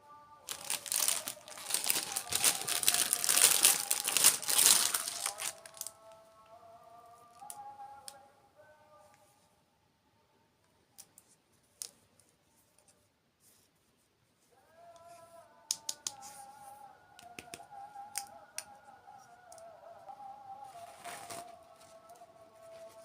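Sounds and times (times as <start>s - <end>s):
soft background music: 0.0s - 10.4s, 14.8s - 23.0s
sharp clicks and snaps: 15.7s - 16.2s.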